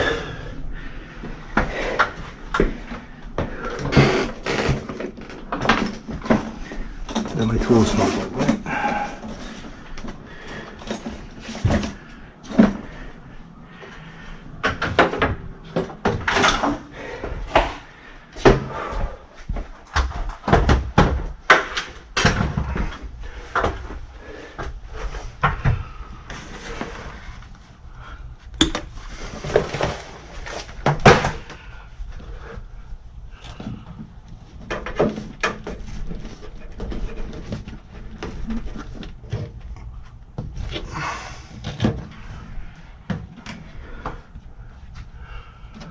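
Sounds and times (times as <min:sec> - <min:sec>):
hand tools knocking and clattering: 0:05.6 - 0:09.7.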